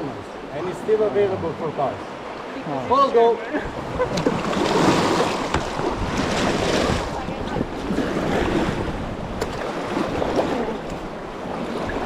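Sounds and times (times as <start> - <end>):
river water rushing and splashing: 0.0 - 12.0
wind buffeting microphone: 3.6 - 12.0.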